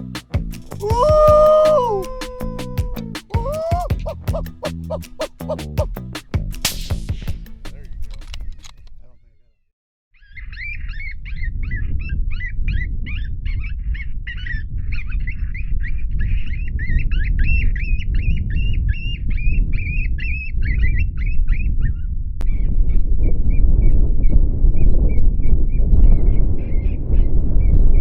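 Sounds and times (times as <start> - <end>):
wind buffeting microphone: 0.9 - 5.5, 10.4 - 28.0.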